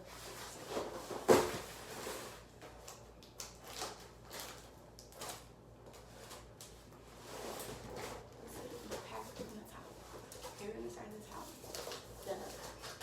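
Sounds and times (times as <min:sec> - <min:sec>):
cardboard scraping and rustling: 0:00.0 - 0:02.6, 0:06.0 - 0:13.0.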